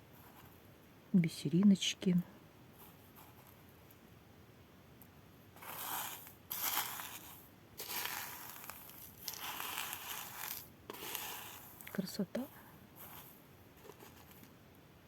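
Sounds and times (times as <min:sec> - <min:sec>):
beads rustling: 0:05.6 - 0:14.6.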